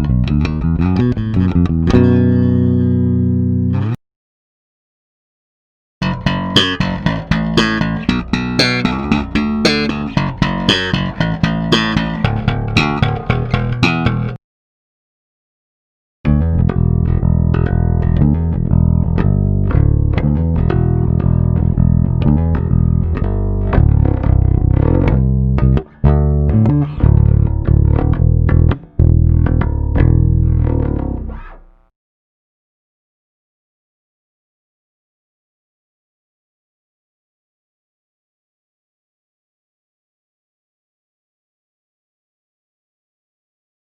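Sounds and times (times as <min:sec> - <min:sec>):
electric bass plucked notes: 0:00.0 - 0:04.0, 0:06.0 - 0:14.4, 0:16.2 - 0:31.9.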